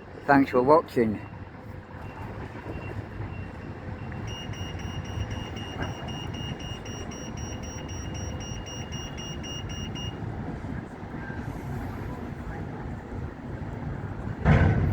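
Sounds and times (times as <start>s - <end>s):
reversing alarm beeping: 1.2s - 10.6s.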